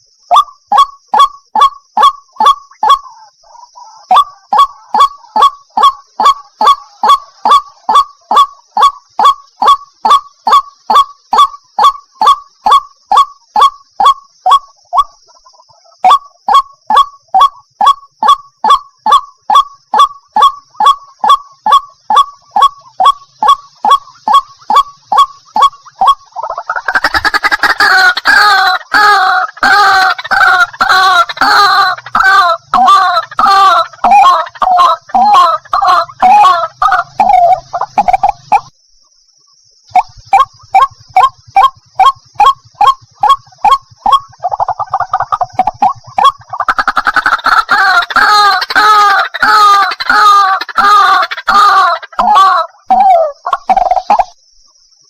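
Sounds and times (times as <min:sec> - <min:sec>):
waterhen honking calls: 0:16.0 - 0:38.7, 0:40.0 - 0:54.2.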